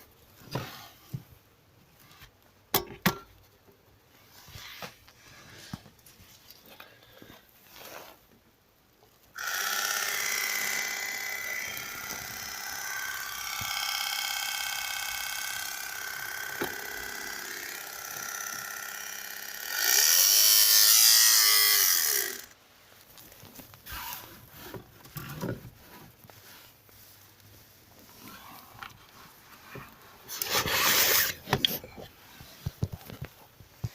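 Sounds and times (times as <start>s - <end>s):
heater blower fan whining: 9.4s - 22.5s.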